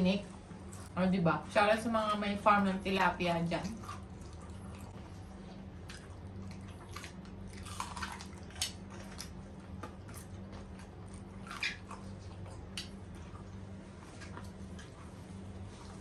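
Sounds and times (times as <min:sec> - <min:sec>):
steady low hum: 0:00.0 - 0:16.0
biting and crunching food: 0:03.7 - 0:16.0.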